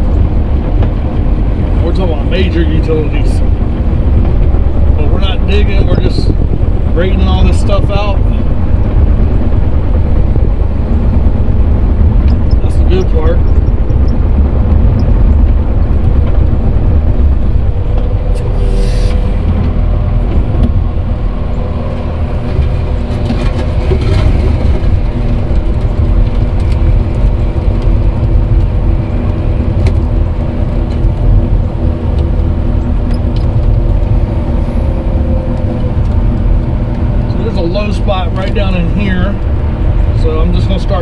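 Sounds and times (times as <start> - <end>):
heavy machine engine under load: 0.0 - 41.0
metal clanks and rattles: 21.4 - 28.0.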